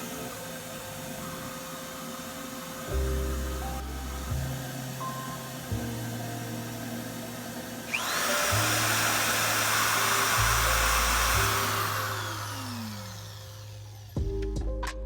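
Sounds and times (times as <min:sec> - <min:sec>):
power tool motor whining: 0:00.0 - 0:14.3
background music with bass line: 0:02.9 - 0:07.1, 0:14.2 - 0:15.0.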